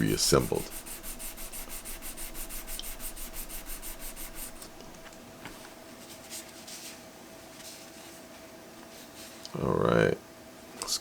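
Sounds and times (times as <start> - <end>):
hand rubbing strokes: 0.0 - 7.0.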